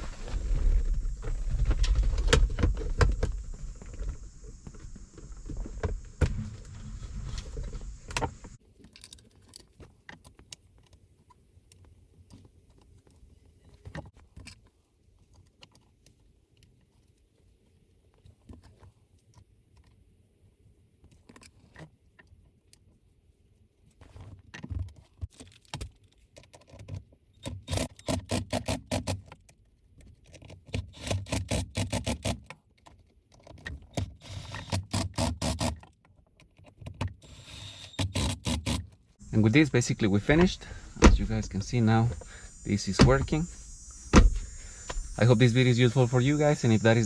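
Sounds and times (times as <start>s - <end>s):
plastic parts and screws clicking: 24.6s - 39.0s.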